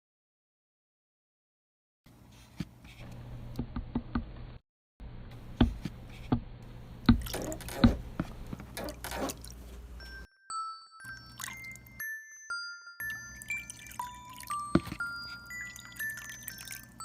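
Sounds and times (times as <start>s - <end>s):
water dripping: 13.0s - 17.0s.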